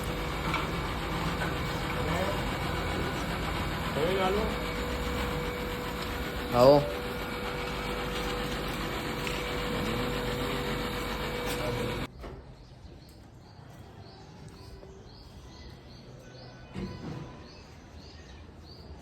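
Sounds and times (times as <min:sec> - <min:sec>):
machine humming: 0:00.0 - 0:12.1.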